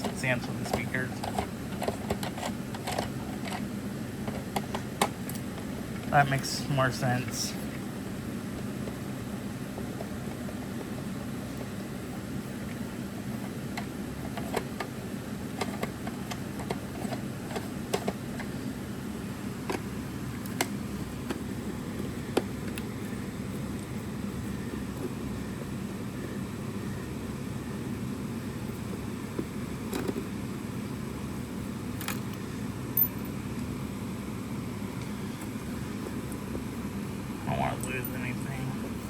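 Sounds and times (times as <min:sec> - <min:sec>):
clicks and taps of plastic parts: 0:00.0 - 0:03.6, 0:15.6 - 0:18.5, 0:28.9 - 0:30.3
low fan-like hum: 0:00.0 - 0:39.0.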